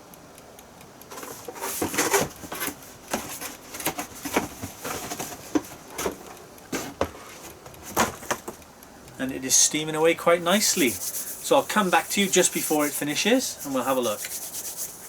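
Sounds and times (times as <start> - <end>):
steamer hissing: 9.7 - 15.0.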